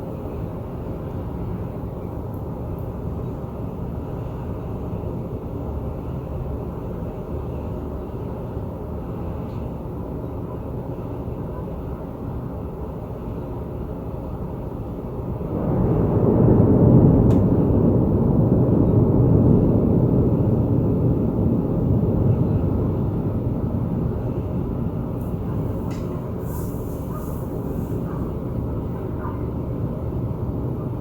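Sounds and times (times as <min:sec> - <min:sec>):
deep rolling thunder: 0:15.2 - 0:31.0.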